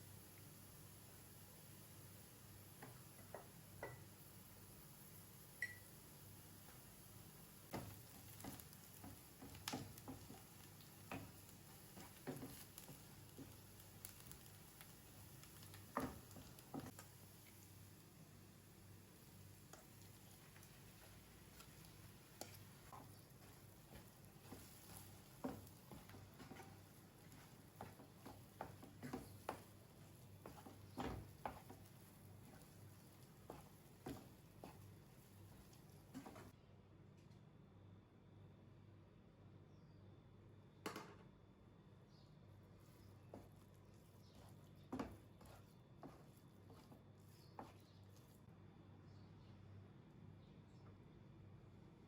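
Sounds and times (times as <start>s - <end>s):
utensil tapping in a pan: 2.8s - 4.2s, 7.7s - 17.6s, 19.7s - 36.5s, 44.3s - 47.8s.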